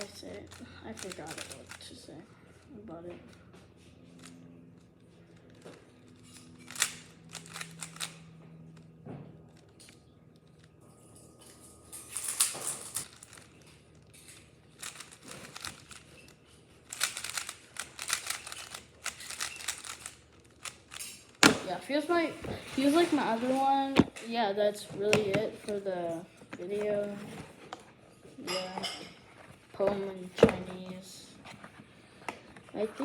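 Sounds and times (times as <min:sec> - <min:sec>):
speed cube plastic clicks: 0:00.0 - 0:02.0, 0:05.5 - 0:08.3, 0:12.2 - 0:13.5, 0:14.7 - 0:21.8.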